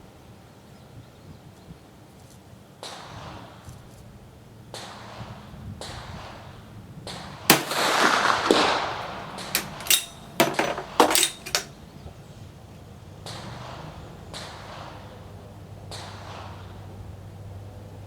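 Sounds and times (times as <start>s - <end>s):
rifle bolt metallic clicks: 7.5s - 8.3s, 9.4s - 11.7s
rifle shot with echo: 7.5s - 11.7s.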